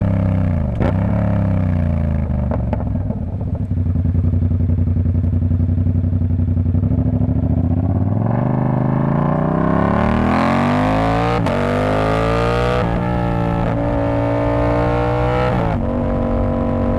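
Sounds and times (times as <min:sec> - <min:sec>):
motorcycle engine accelerating: 0:00.0 - 0:16.9.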